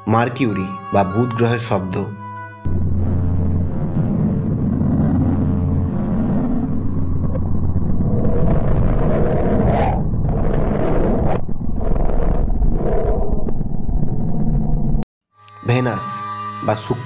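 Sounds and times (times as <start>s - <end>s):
deep rumble with hissing swells: 2.7s - 15.0s.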